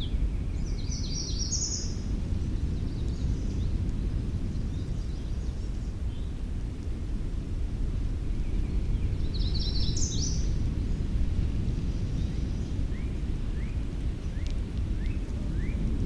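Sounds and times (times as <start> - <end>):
songbirds singing: 0.0 - 6.5, 7.8 - 16.0
low background rumble: 0.0 - 16.0.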